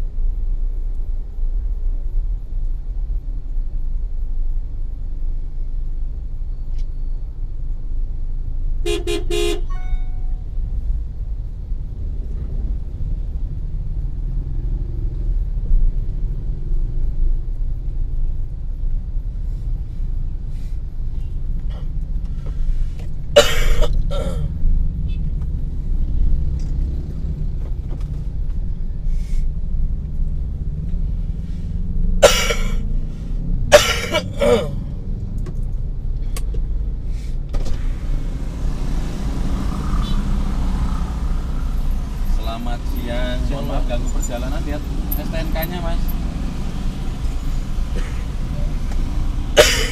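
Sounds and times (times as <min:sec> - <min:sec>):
car engine rumble: 0:00.0 - 0:49.9.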